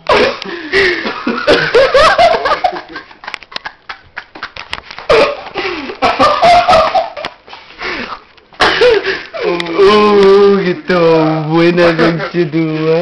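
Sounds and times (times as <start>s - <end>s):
group of people laughing: 0.1s - 9.5s.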